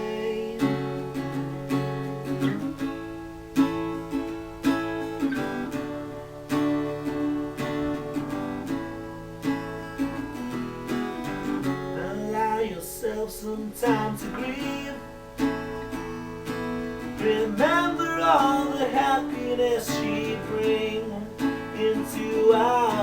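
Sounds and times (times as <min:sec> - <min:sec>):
acoustic guitar strumming chords: 0:00.0 - 0:23.0.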